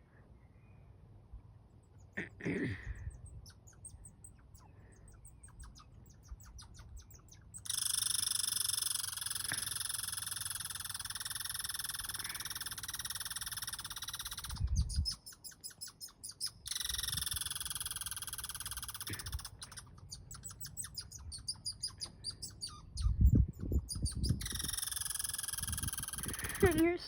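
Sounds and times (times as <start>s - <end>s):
fast evenly spaced chirps: 3.5s - 26.9s
chirring animal chorus: 4.9s - 14.6s.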